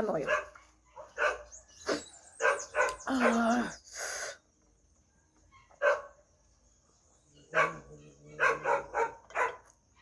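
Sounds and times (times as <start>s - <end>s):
dog barking: 0.2s - 1.6s, 2.4s - 3.4s, 5.6s - 6.2s, 7.5s - 9.8s.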